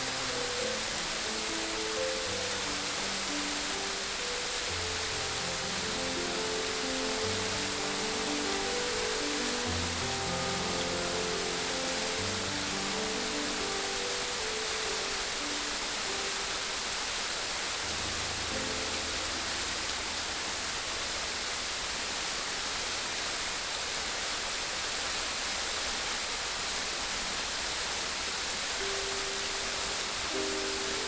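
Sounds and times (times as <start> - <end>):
soft background music: 0.0 - 22.0, 28.6 - 31.0
rushing water: 0.0 - 31.0.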